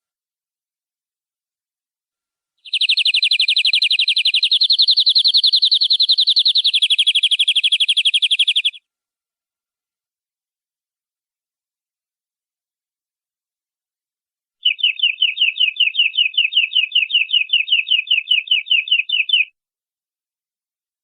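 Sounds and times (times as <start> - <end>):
canary trilling: 2.6 - 8.8, 14.6 - 19.5.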